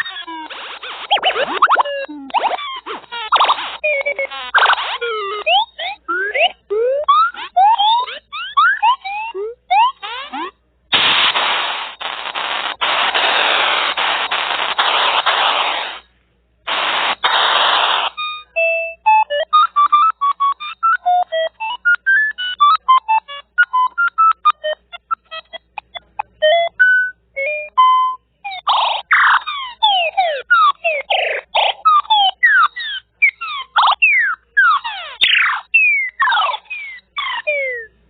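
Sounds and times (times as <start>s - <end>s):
static-like electronic hiss: 0.0s - 6.7s, 9.7s - 18.3s
short electronic beeps: 0.0s - 16.0s, 16.7s - 37.9s.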